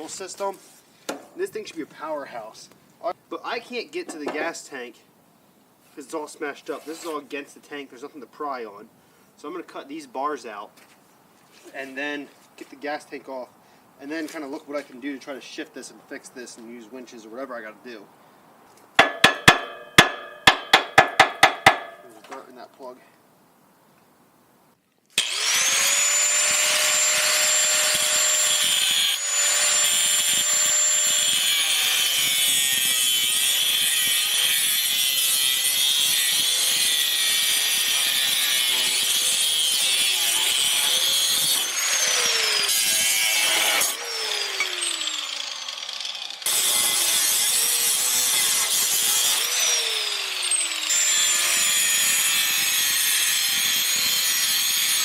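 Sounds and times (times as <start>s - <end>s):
angle grinder cutting steel: 25.2s - 55.0s.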